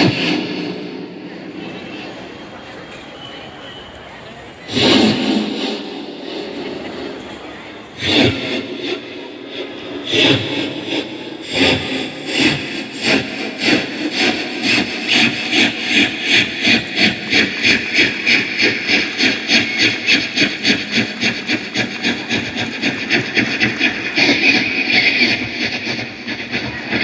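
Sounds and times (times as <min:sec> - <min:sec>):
person imitating steam locomotive: 0:03.5 - 0:27.0.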